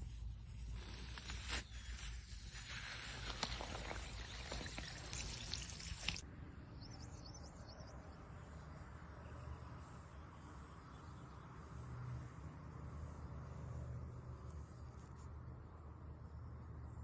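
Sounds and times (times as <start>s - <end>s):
kinetic sand crumbling: 0.6s - 6.2s.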